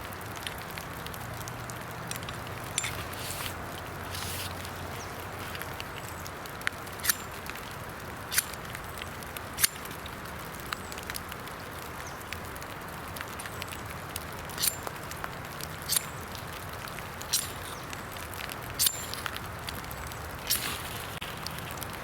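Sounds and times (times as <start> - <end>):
rain hiss: 0.0 - 22.0
sharp click or scrape: 2.2 - 4.6, 17.3 - 17.8, 20.5 - 21.2.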